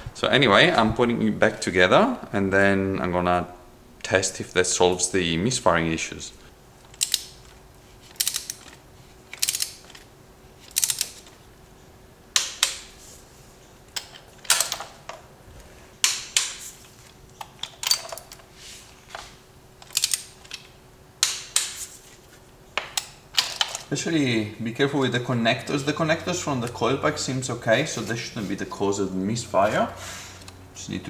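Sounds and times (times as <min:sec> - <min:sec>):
ratchet wrench clicking: 0:06.9 - 0:07.5, 0:08.1 - 0:10.0, 0:10.6 - 0:11.3, 0:19.8 - 0:20.6.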